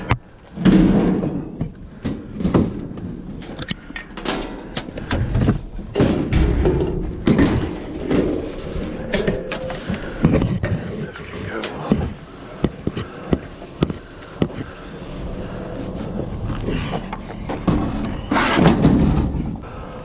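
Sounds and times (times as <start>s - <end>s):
scrap metal clattering in dumpster: 0.5s - 10.8s, 17.5s - 19.6s.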